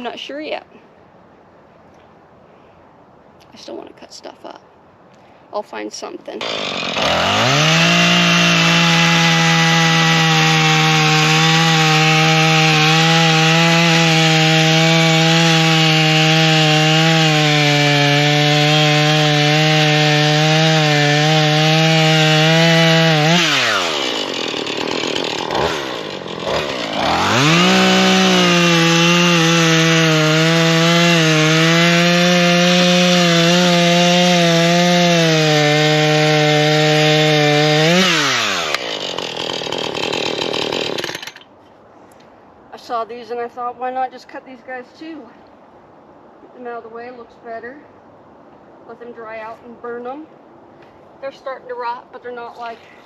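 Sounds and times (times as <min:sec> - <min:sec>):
chainsaw cutting wood: 0:06.4 - 0:41.5.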